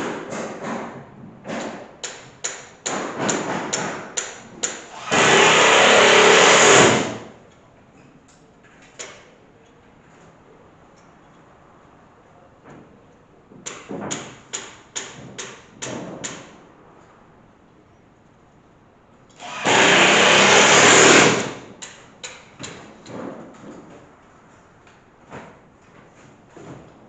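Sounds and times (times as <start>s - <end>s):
electric drill clicks: 4.9s - 7.2s, 19.4s - 21.5s
electric drill running: 4.9s - 7.2s, 19.4s - 21.5s.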